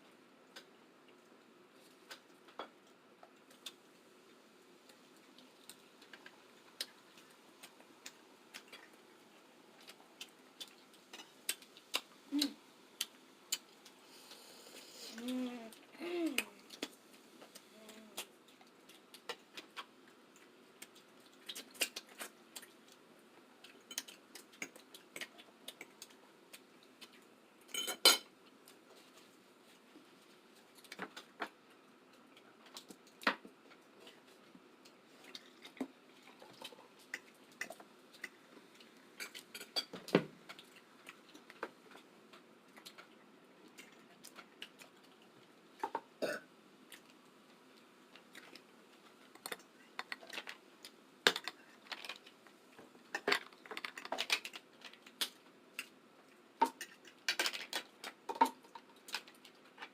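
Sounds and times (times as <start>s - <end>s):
short vocal sounds: 14.8s - 16.6s
cutlery and dishes clinking: 27.7s - 28.3s, 39.2s - 40.0s.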